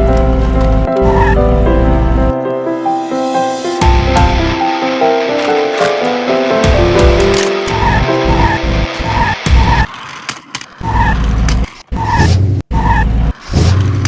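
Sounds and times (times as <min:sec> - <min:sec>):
race car engine: 0:00.0 - 0:02.4, 0:03.8 - 0:14.0
tyres skidding: 0:00.0 - 0:02.4, 0:03.8 - 0:14.0
background music melody: 0:00.0 - 0:09.9.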